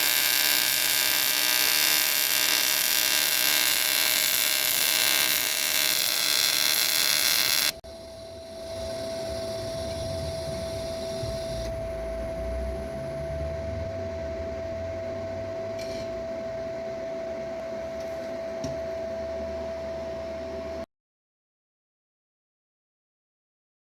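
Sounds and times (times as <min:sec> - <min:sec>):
welding arc buzzing: 0:00.0 - 0:16.2
steady high tone: 0:05.3 - 0:18.0
low hum: 0:07.7 - 0:20.8.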